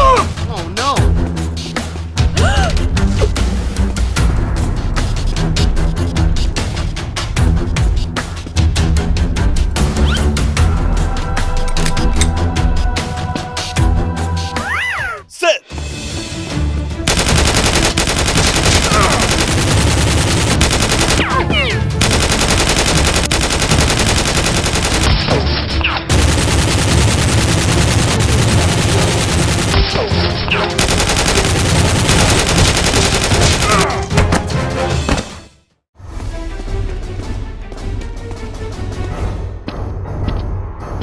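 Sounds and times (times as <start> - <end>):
rapid automatic gunfire: 17.1 - 21.4, 22.0 - 25.3, 26.1 - 30.0, 30.8 - 33.9.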